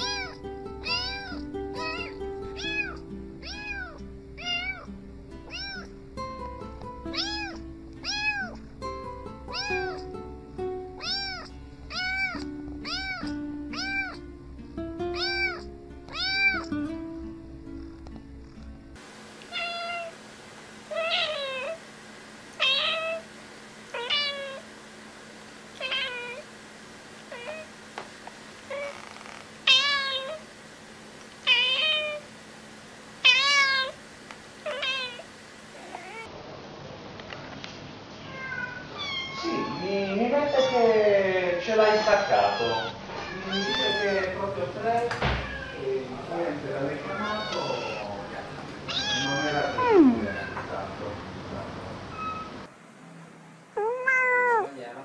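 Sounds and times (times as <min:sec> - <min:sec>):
cat meowing: 0:00.0 - 0:05.9, 0:07.1 - 0:08.7, 0:09.5 - 0:10.1, 0:11.0 - 0:14.3, 0:15.1 - 0:16.7, 0:19.5 - 0:20.1, 0:20.9 - 0:21.8, 0:22.6 - 0:23.2, 0:23.9 - 0:24.6, 0:25.8 - 0:26.4, 0:27.3 - 0:27.7, 0:28.7 - 0:30.4, 0:31.4 - 0:32.3, 0:33.2 - 0:34.0, 0:34.6 - 0:36.3, 0:38.2 - 0:41.0, 0:41.7 - 0:44.4, 0:45.2 - 0:46.0, 0:47.0 - 0:48.3, 0:48.9 - 0:50.7, 0:53.8 - 0:54.8
background music: 0:00.0 - 0:19.0.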